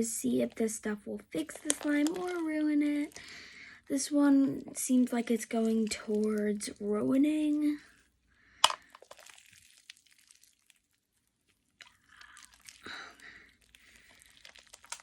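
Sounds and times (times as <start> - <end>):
slime crackling and popping: 1.4 - 3.4, 8.6 - 15.0.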